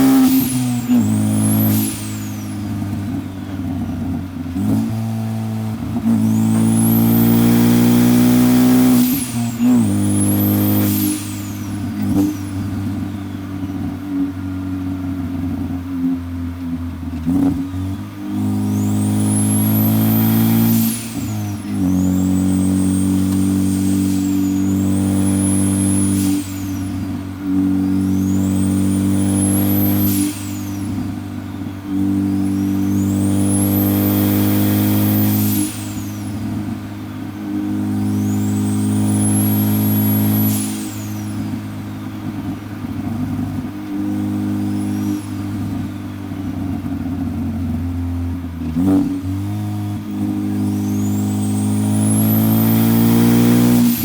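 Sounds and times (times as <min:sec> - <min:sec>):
turbo whistle: 0:00.0 - 0:03.9, 0:06.0 - 0:14.2, 0:17.9 - 0:46.4
car engine accelerating: 0:00.0 - 0:54.0.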